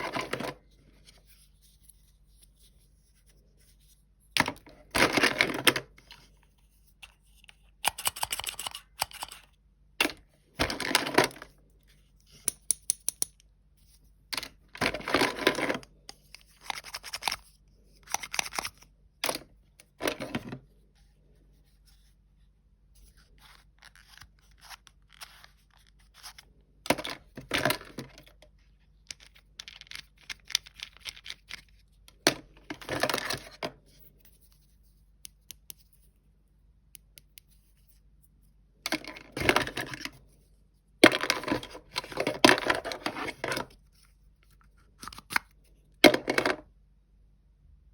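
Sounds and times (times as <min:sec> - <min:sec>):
plastic pieces clicking: 0:29.0 - 0:33.3.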